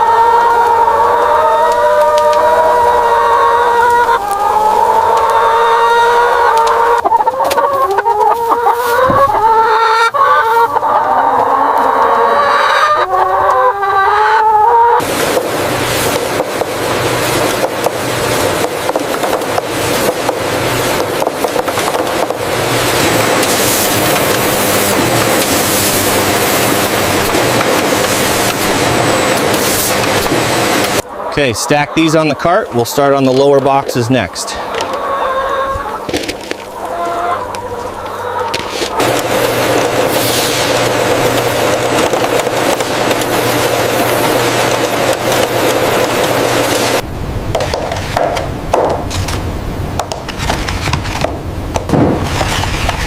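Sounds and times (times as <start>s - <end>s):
chickens clucking and calling: 0.0s - 47.0s
machine hiss and hum: 22.0s - 31.0s, 38.7s - 49.9s.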